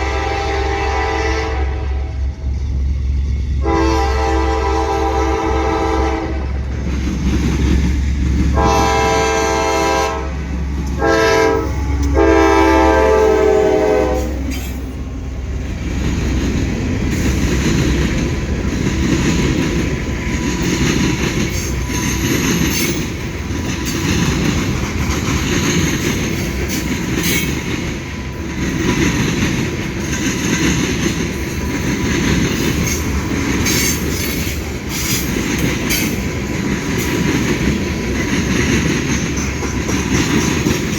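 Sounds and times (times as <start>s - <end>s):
locomotive horn blowing: 0.0s - 2.3s, 3.6s - 6.6s, 8.5s - 14.8s
train wheels clattering and squealing: 6.5s - 9.5s, 10.4s - 40.9s.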